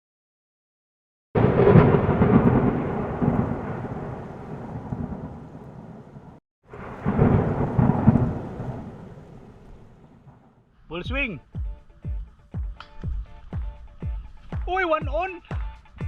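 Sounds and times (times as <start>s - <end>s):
thunder rumbling: 1.4s - 10.7s.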